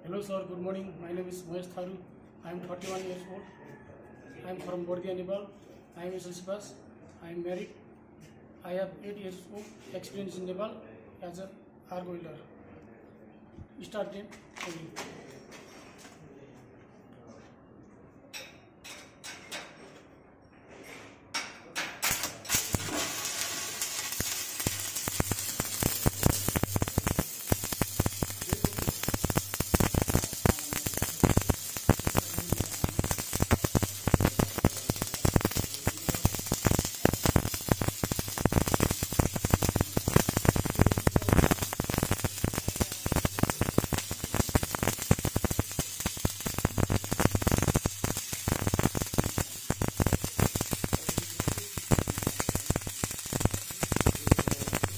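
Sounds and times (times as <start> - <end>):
welding arc crackling sizzle: 21.9 - 54.9.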